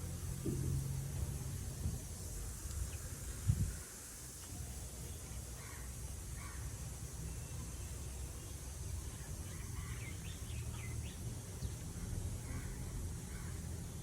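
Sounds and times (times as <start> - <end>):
bird chirps: 7.2 - 11.8
steady low rumble: 8.6 - 14.0.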